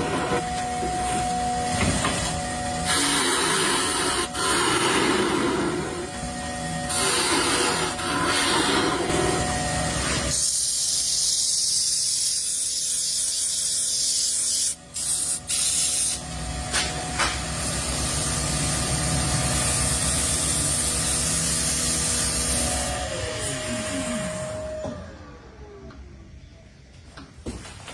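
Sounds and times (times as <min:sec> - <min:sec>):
spraying hiss: 0:10.4 - 0:16.2.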